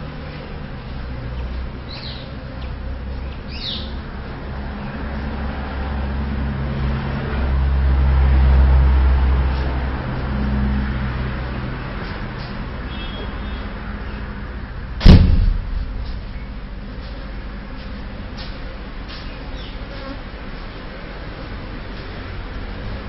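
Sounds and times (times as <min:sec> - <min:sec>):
vehicle engine humming: 0:00.0 - 0:23.0.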